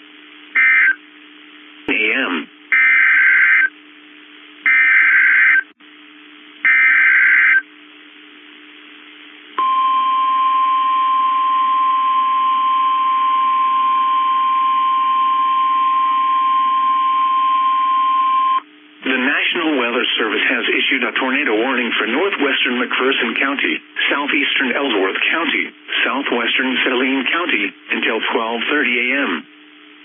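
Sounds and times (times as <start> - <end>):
single-pitch warning alarm tone: 4.7 - 5.7, 6.7 - 7.6, 9.6 - 18.6.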